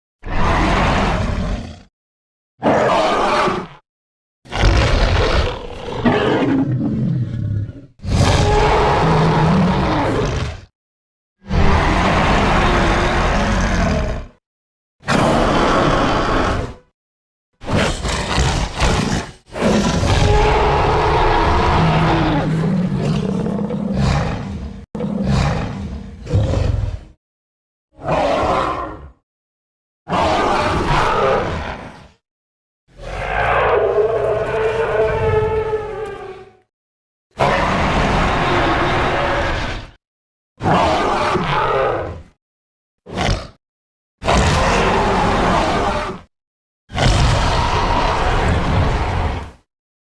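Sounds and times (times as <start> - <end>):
rough roar sound effects: 0.2 - 1.9, 4.5 - 10.7, 11.4 - 14.4, 15.1 - 16.9, 17.6 - 27.2, 28.0 - 29.2, 33.0 - 36.7, 37.4 - 40.0, 44.2 - 46.3, 46.9 - 49.6.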